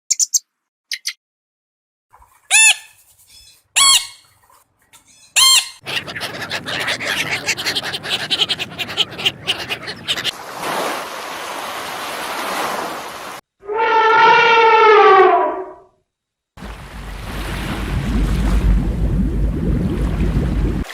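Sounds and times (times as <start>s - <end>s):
high animal chirps: 2.5s - 4.2s, 5.0s - 10.3s
rapid chattering animal calls: 5.2s - 10.3s
loud rising and falling animal calls: 5.7s - 10.3s, 13.6s - 15.8s.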